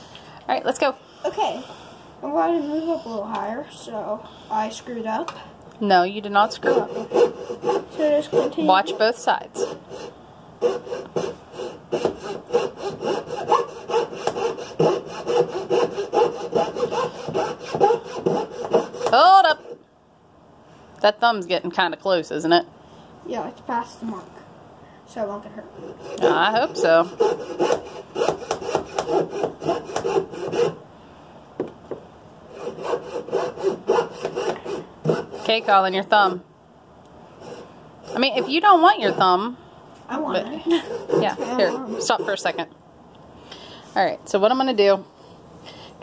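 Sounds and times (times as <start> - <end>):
saw rasping through wood: 6.4 - 19.8, 25.8 - 30.8, 32.5 - 36.4, 37.4 - 39.5, 40.7 - 42.7.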